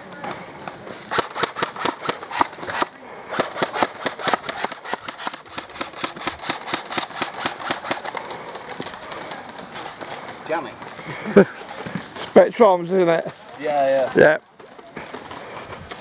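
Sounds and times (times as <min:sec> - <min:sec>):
airsoft guns firing: 0:01.1 - 0:09.2.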